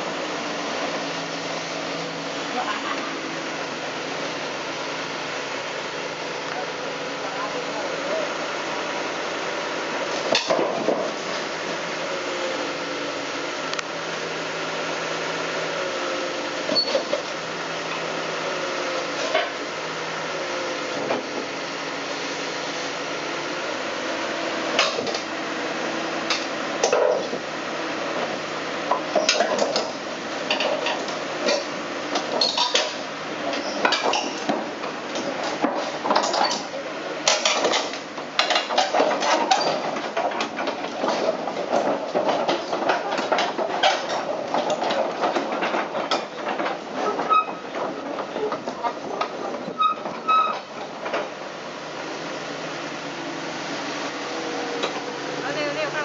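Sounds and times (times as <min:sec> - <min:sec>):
backhoe engine running: 0:00.0 - 0:56.0
metal clanks and knocks: 0:28.9 - 0:51.3.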